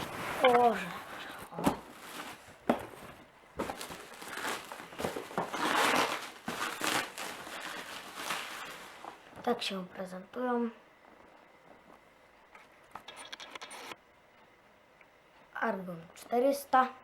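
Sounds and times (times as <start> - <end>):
plastic wrap crinkling and tearing: 0.0 - 9.2.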